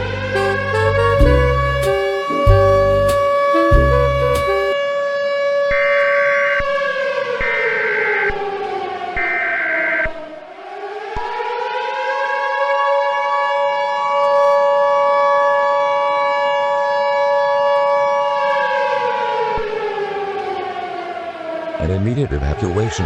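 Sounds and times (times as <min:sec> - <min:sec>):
civil defense siren winding: 0:00.4 - 0:04.8, 0:12.1 - 0:21.8
two-tone attention signal: 0:00.4 - 0:04.8.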